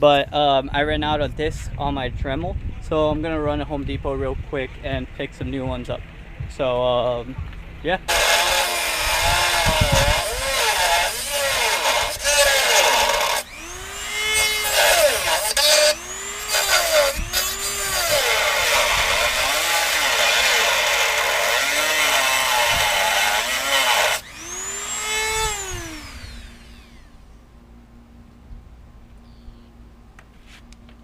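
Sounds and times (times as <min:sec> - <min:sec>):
rotary tool cutting: 0:08.1 - 0:27.1
rotary tool whining down: 0:08.1 - 0:27.3.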